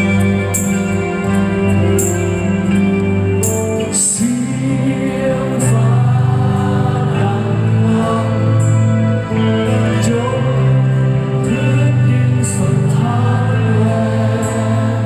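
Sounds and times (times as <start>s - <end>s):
electric guitar and bass chords: 0.0s - 15.0s
person singing: 3.5s - 15.0s.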